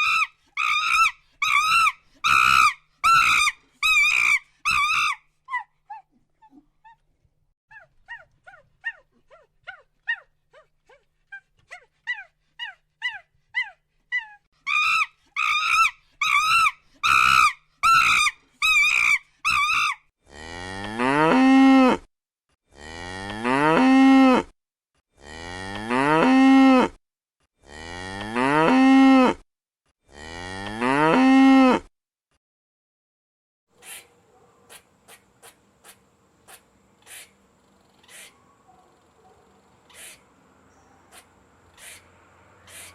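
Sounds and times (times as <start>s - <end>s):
cow mooing: 22.8s - 24.5s, 27.6s - 29.4s, 30.1s - 31.8s
short high-pitched animal calls: 33.8s - 34.1s, 34.7s - 37.4s, 38.0s - 38.4s, 39.9s - 40.2s, 41.1s - 42.9s.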